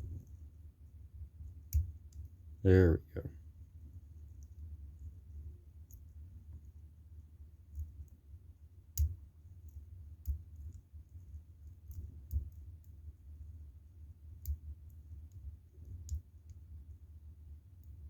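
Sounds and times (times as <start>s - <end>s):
low steady rumble: 0.0s - 0.8s.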